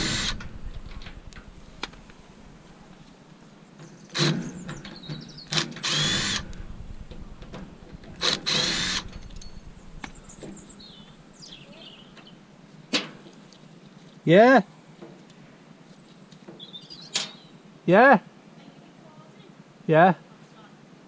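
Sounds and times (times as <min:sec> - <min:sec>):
cordless drill whining: 0:00.0 - 0:00.5, 0:04.2 - 0:04.4, 0:05.5 - 0:06.6, 0:08.2 - 0:09.7.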